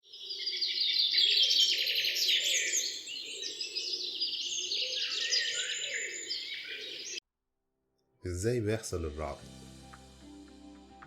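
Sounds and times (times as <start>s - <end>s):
small birds chirping and trilling: 0.0s - 7.2s.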